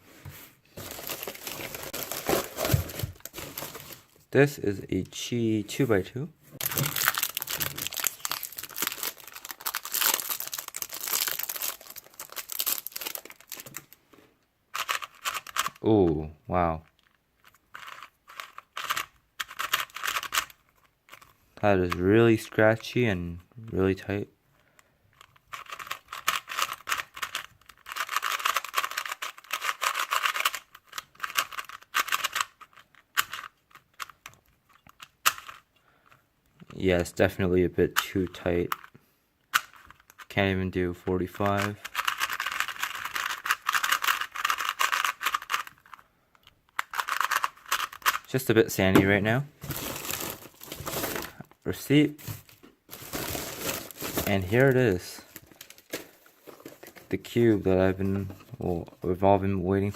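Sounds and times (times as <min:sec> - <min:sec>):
plastic packaging crinkling and tearing: 0:00.8 - 0:04.2, 0:06.6 - 0:14.0, 0:49.6 - 0:57.1
person speaking: 0:00.8 - 0:13.6, 0:15.7 - 0:17.0, 0:21.6 - 0:24.3, 0:36.6 - 0:38.8, 0:40.2 - 0:42.0, 0:48.2 - 0:55.9, 0:56.6 - 0:59.9
puzzle cube plastic clicking: 0:14.7 - 0:15.8, 0:16.8 - 0:21.3, 0:24.6 - 0:36.8, 0:38.7 - 0:40.3, 0:41.5 - 0:48.3.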